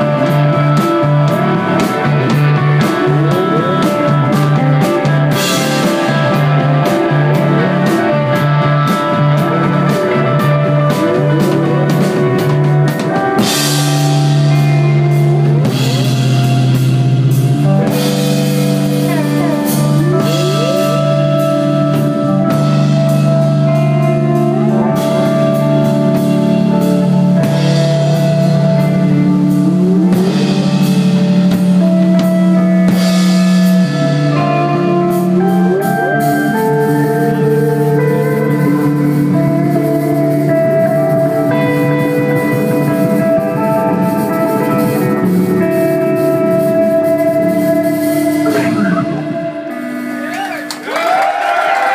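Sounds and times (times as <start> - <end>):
bass line: 0.0 - 51.9
drum kit: 0.0 - 51.9
electric guitar with sliding notes: 0.0 - 51.9.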